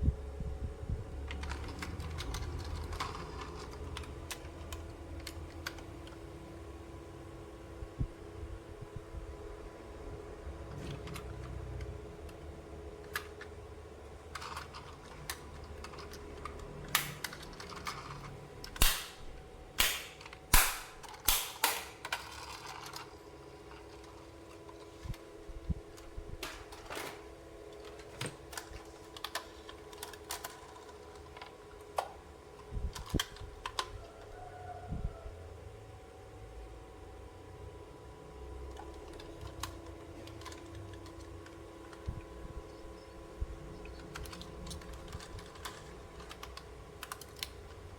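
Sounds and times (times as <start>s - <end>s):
faint steady hum: 0.0s - 47.9s
plastic toy parts clicking: 1.3s - 6.2s, 14.3s - 25.2s, 26.0s - 32.2s, 32.9s - 34.0s, 38.7s - 42.1s, 43.9s - 47.9s.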